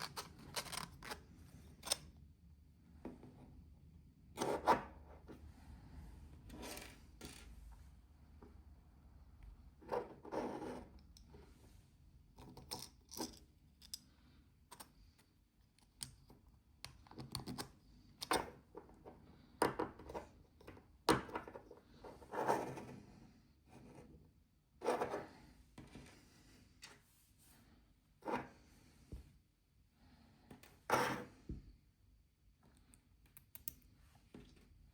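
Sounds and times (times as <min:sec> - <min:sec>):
plastic parts scraping: 0:00.0 - 0:02.1.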